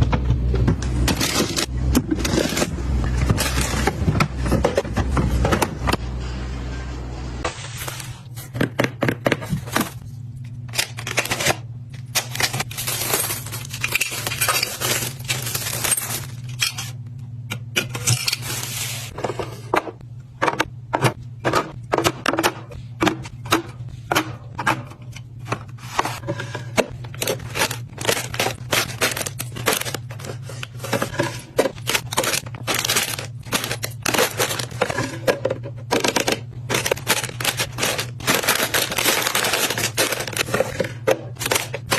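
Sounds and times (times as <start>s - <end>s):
steady low hum: 0.0s - 41.9s
plastic packaging crinkling: 11.0s - 16.9s, 27.0s - 35.1s, 36.0s - 41.9s
containers clinking and knocking: 19.2s - 41.9s.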